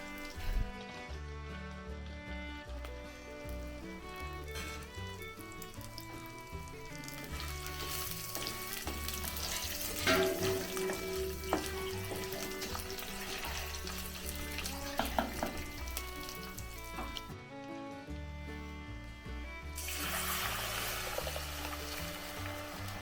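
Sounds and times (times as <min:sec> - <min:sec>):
food sizzling in a pan: 0:04.6 - 0:17.2, 0:19.8 - 0:23.0
utensil knocking against pan: 0:07.8 - 0:17.3.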